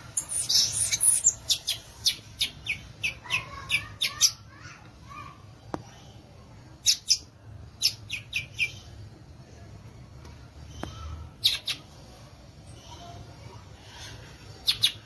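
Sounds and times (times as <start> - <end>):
bird chirping: 0.0 - 4.2.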